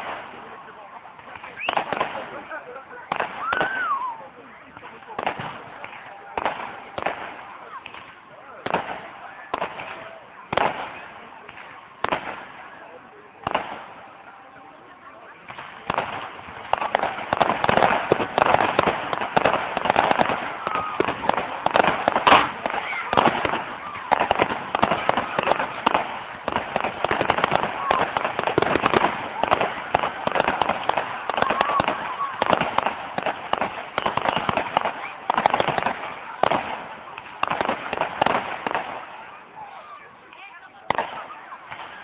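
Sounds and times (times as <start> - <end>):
fireworks crackling and popping: 0.0 - 42.0
firework whistle: 1.5 - 2.0, 3.3 - 4.3, 33.9 - 35.3.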